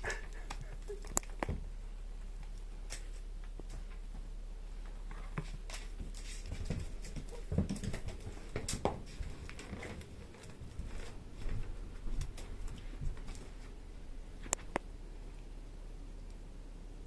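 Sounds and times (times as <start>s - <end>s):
cats thumping and pattering: 2.8s - 13.8s.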